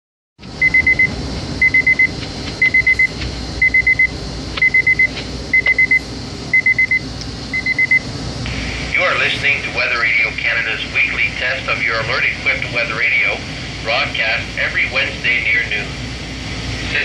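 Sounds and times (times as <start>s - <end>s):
radio hiss and rumble: 0.4s - 17.0s
high electronic alarm beeps: 0.6s - 8.1s.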